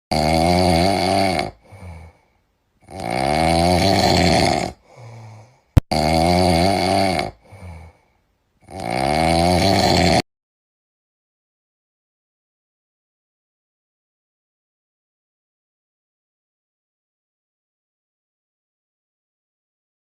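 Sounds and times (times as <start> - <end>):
kitten snoring: 0.1 - 2.1, 2.8 - 4.8, 5.9 - 7.9, 8.6 - 10.2.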